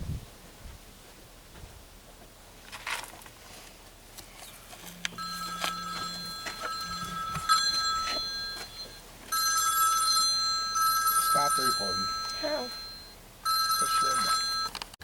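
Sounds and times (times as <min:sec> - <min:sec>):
electronic ringing tone: 0:04.8 - 0:14.8.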